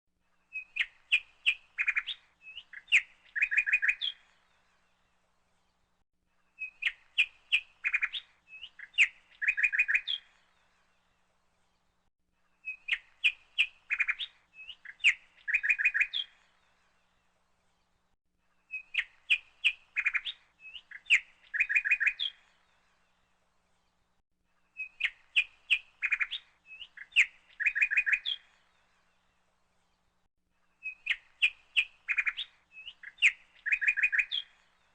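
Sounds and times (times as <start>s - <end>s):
bird chirping and trilling: 0.5s - 4.5s, 6.6s - 10.5s, 12.6s - 16.6s, 18.7s - 22.7s, 24.7s - 29.0s, 30.8s - 34.9s.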